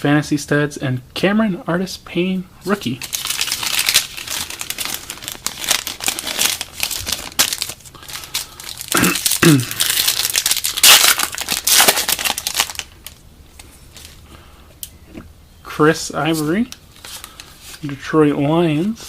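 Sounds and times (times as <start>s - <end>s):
foil wrapper crinkling: 3.0s - 13.2s, 16.6s - 17.9s.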